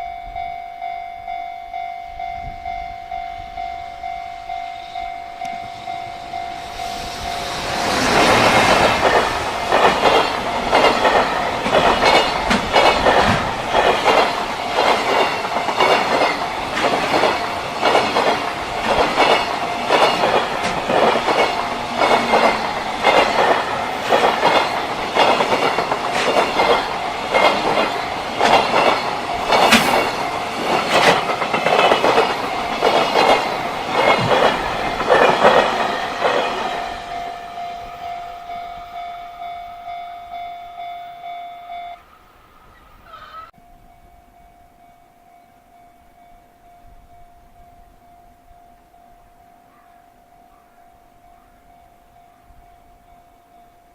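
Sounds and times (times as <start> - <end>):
train wheels clattering over rails: 6.6 - 37.4.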